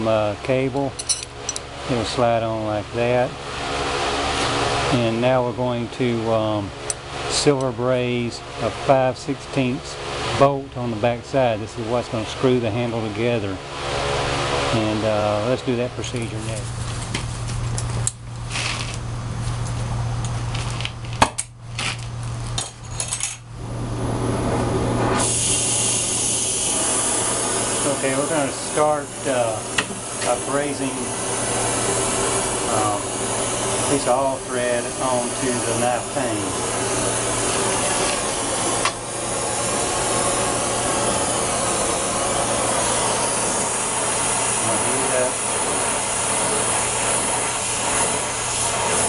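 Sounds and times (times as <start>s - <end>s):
gas torch hissing: 0.0s - 19.0s, 23.6s - 49.0s
steady shop hum: 0.0s - 49.0s
metal parts and tools clinking: 1.0s - 1.6s, 22.6s - 23.5s.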